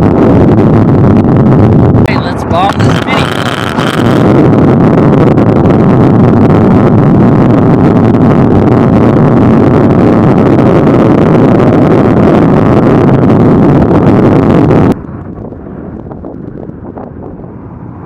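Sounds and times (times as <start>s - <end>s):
longboard wheels rumbling on pavement: 0.0s - 18.0s
wind buffeting camera: 0.0s - 18.0s
grit ticking under wheels: 2.7s - 10.5s.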